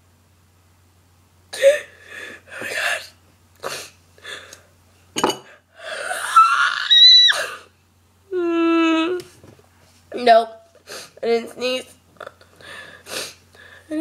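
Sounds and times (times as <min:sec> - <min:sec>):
girl gasping and sniffing: 0:12.6 - 0:14.0.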